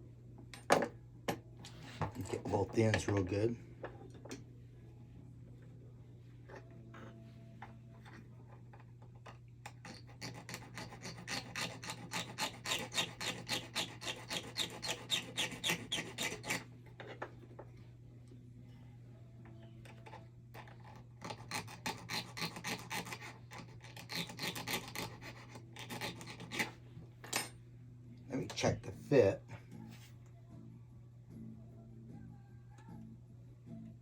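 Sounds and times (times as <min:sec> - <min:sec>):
hand file rasping on wire: 0:09.7 - 0:16.7, 0:20.0 - 0:26.8.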